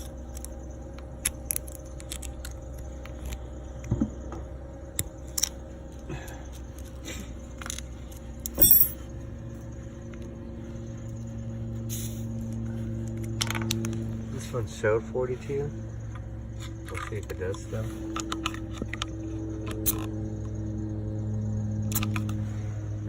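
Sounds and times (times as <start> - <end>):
low steady hum: 0.0 - 23.0
small metallic clicks and clinks: 7.6 - 9.0.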